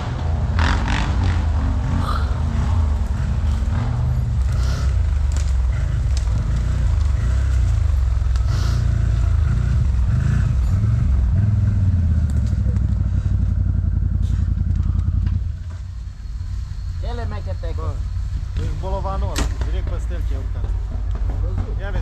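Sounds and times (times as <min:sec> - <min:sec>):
vehicle engine running: 0:00.0 - 0:22.0
knocks and scrapes: 0:18.5 - 0:22.0.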